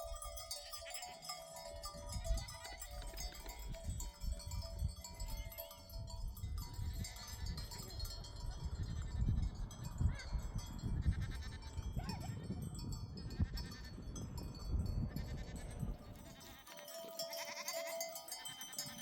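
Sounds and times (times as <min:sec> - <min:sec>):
sheep bleating: 0:15.1 - 0:19.0.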